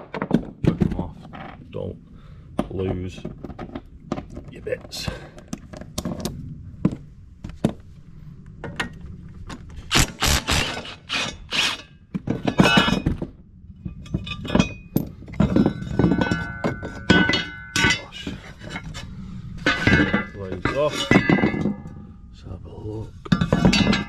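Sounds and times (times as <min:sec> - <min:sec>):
steel clunks scrapes and clinks: 0:10.6 - 0:13.2, 0:13.8 - 0:22.2, 0:22.9 - 0:24.0
metallic ringing: 0:15.8 - 0:18.2, 0:19.6 - 0:22.4.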